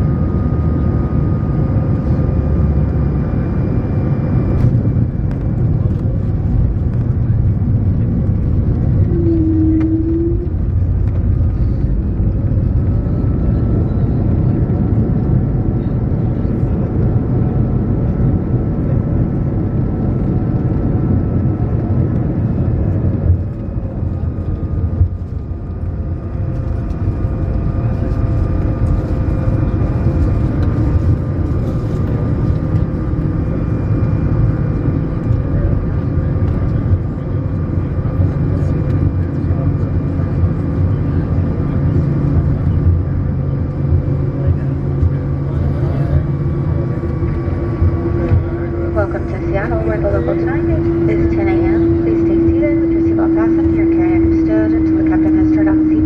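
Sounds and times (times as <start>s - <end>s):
aircraft cabin engine rumble: 0.0s - 56.0s
brief single tone: 9.0s - 10.5s.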